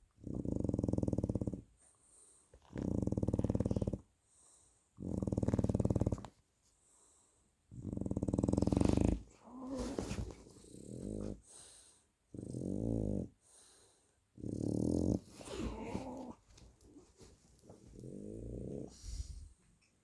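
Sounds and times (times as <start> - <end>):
dog snoring: 0.2 - 1.7, 2.6 - 4.1, 5.0 - 6.4, 7.7 - 11.7, 12.3 - 13.4, 14.4 - 16.4, 17.9 - 19.5.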